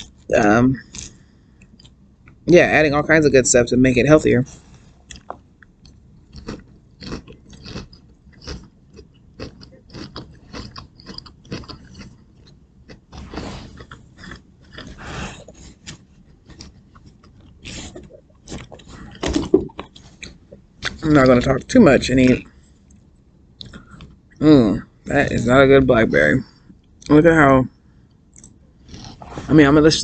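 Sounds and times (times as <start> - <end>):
person chewing crunchy food: 0.0 - 2.4, 4.5 - 21.4, 22.4 - 24.4, 28.1 - 29.6.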